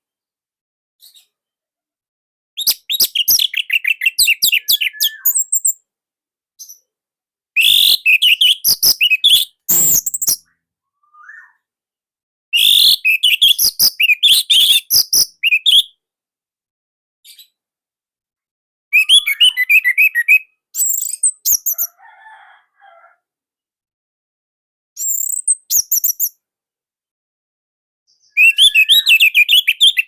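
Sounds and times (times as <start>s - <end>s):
thrush singing high chirps: 7.6s - 11.6s.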